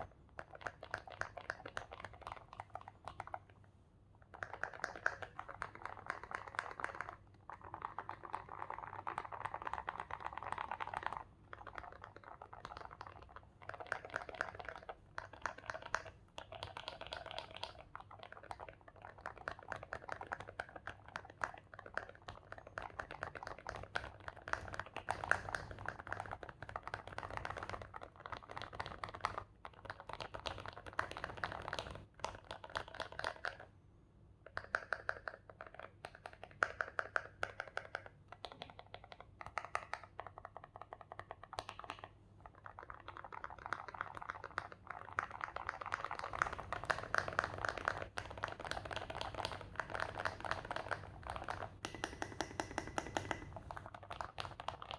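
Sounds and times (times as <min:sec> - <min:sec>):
mechanical keyboard typing: 0:42.7 - 0:54.9.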